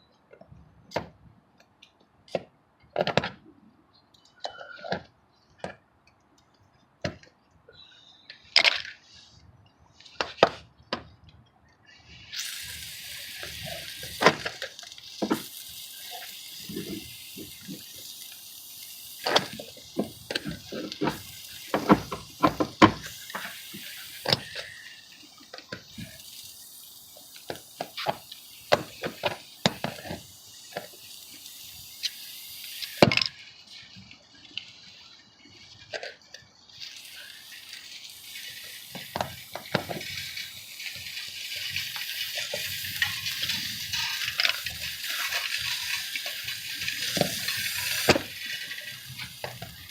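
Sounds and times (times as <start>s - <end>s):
steady hiss: 11.8s - 49.9s.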